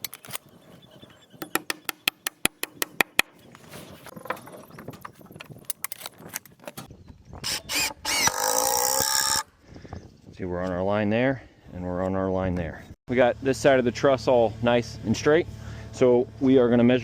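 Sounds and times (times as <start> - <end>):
timber scraping and creaking: 0.0 - 6.9
sharp knocks on wood: 1.4 - 3.3.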